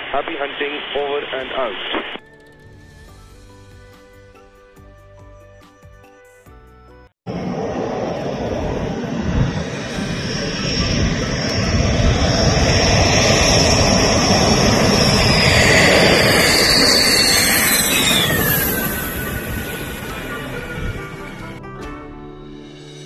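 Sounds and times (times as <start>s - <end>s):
fighter jet flying past: 7.3s - 21.6s
jet whine dropping in pitch: 7.3s - 21.6s.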